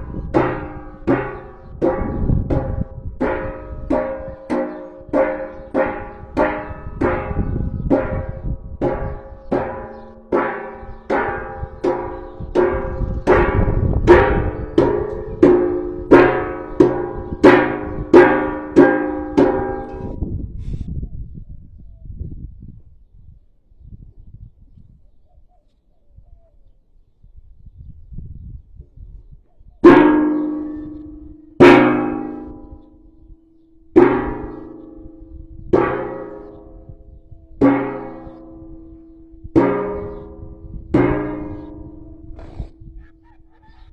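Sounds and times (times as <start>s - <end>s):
rhythmic striking on ringing object: 0.0s - 20.2s, 29.8s - 43.9s.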